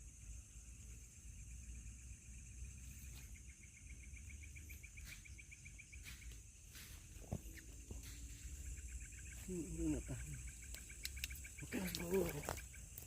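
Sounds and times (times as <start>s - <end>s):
insect trill: 0.0s - 13.0s
insects buzzing: 0.0s - 13.0s
faint clicks: 10.6s - 12.6s.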